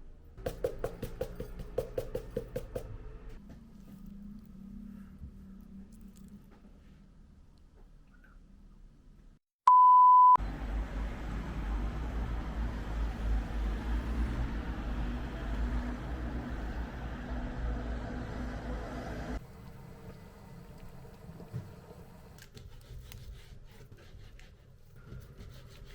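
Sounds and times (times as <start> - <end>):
outdoor rumble and hiss: 10.4 - 22.5.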